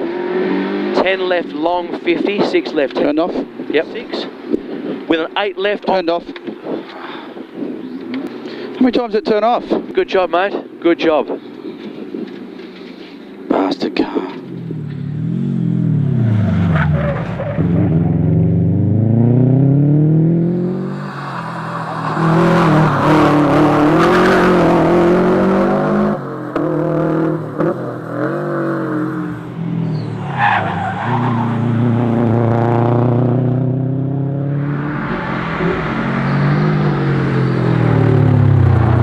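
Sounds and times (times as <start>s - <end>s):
car engine revving: 14.4s - 39.0s.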